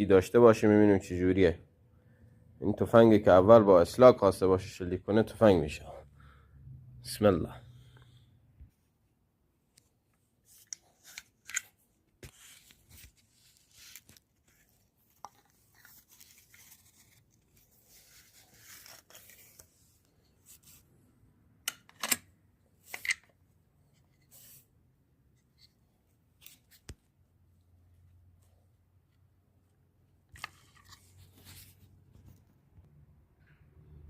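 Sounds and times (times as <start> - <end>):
rustling and scraping objects: 9.7 - 21.0, 22.8 - 27.2, 30.2 - 32.7.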